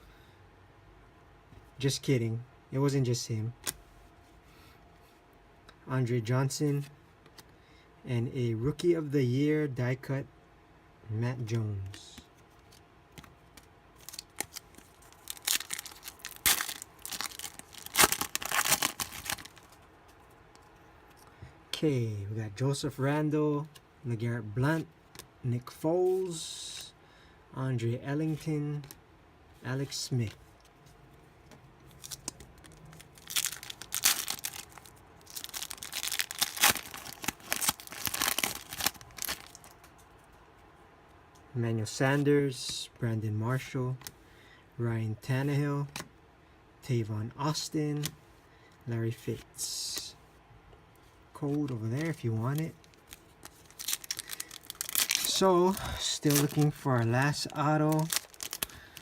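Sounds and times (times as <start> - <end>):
wrapper tearing and crinkling: 14.0 - 19.8, 31.9 - 39.7, 52.0 - 59.0.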